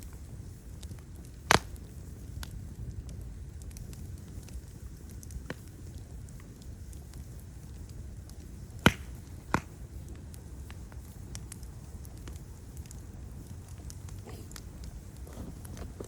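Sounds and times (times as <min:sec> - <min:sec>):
fire crackling: 0:00.0 - 0:16.0
sharp loud pops: 0:08.8 - 0:09.7.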